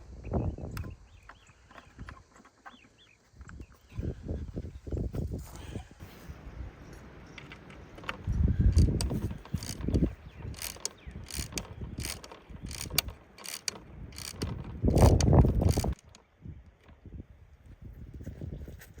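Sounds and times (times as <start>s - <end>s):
low bumping and rumbling: 8.2s - 16.0s
camera mechanism clicking and ratcheting: 8.7s - 16.2s.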